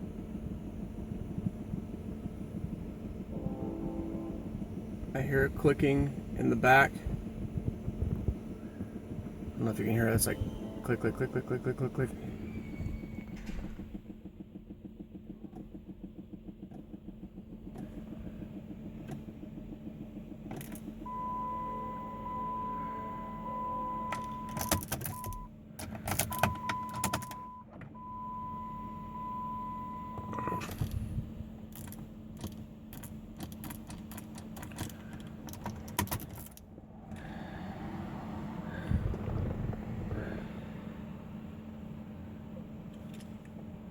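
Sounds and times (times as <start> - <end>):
steady electronic beep: 10.0 - 13.2, 21.1 - 25.5, 26.3 - 30.6
rapid clicking of car starter: 11.1 - 21.1, 24.0 - 28.0, 30.4 - 40.9
keys jangling: 31.8 - 36.6.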